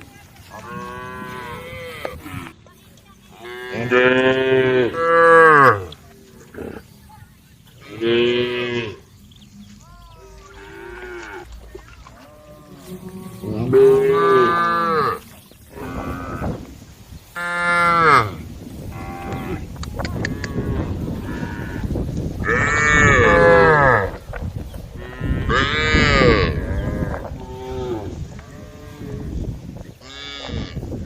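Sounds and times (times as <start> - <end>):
cattle mooing: 9.8 - 16.6, 17.4 - 24.1, 25.0 - 29.4, 30.0 - 30.8.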